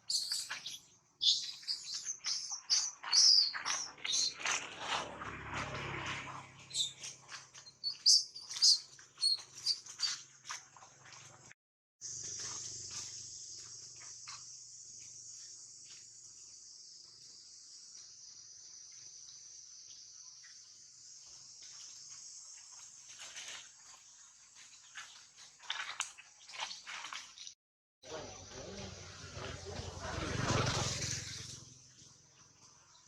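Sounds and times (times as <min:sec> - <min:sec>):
rustles: 0:00.0 - 0:27.5
insects droning: 0:12.0 - 0:25.8, 0:28.1 - 0:30.7.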